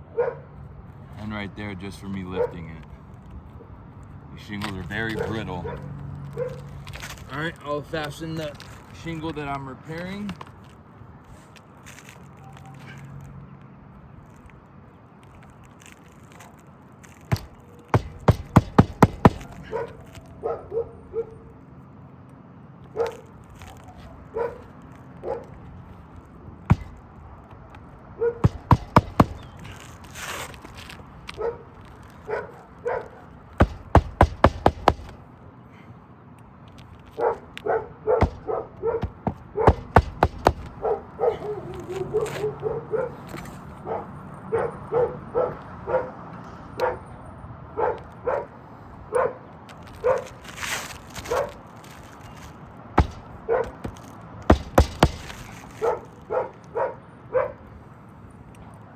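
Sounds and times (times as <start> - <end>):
dog barking: 0.1 - 0.5, 2.4 - 2.6, 24.3 - 25.5, 37.2 - 39.0, 40.8 - 43.2, 43.8 - 46.2, 46.8 - 47.0, 47.8 - 49.4, 55.8 - 57.6
hammering nails into shingle: 17.3 - 20.2, 26.7 - 27.2, 28.4 - 30.9, 33.6 - 35.2, 38.2 - 41.0, 51.8 - 56.0.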